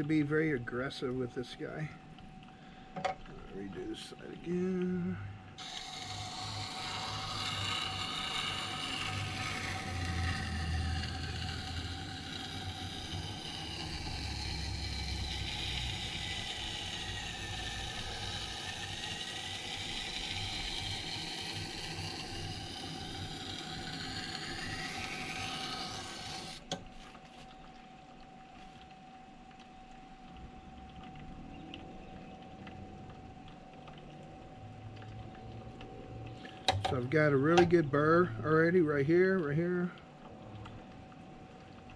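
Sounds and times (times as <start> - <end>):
machine motor hum: 3.2 - 27.8
knife grinding on sharpening stone: 5.6 - 26.6.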